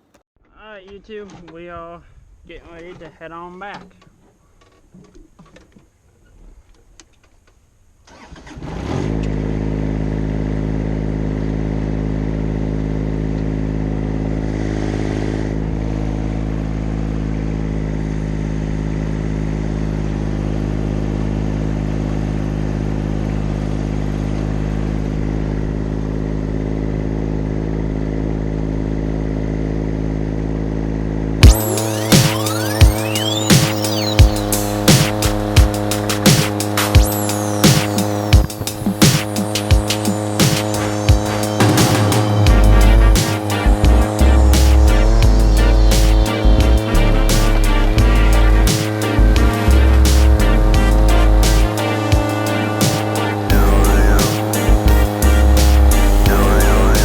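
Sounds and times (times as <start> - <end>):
engine starting and idling: 8.0 - 9.9.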